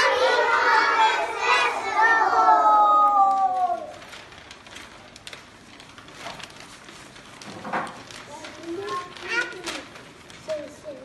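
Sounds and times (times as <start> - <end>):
child calling out: 1.9 - 4.0.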